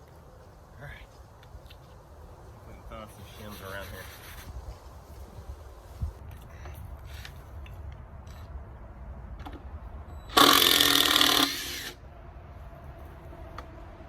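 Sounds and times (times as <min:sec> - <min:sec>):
handheld power tool burst: 0:10.3 - 0:12.0.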